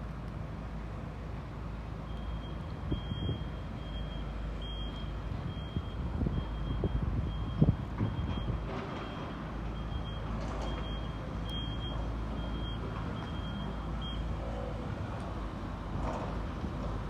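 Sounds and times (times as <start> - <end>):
reversing alarm beeping: 2.0 - 14.7.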